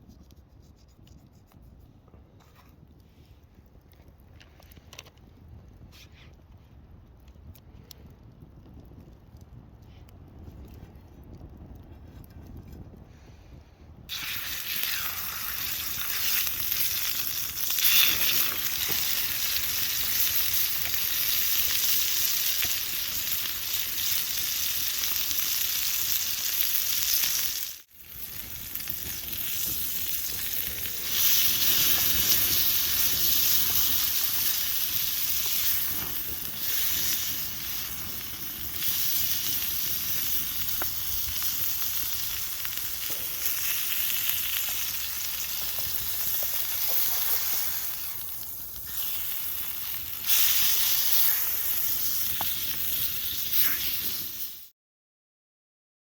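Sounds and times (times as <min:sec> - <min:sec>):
steak sizzling in a pan: 0:14.1 - 0:54.7.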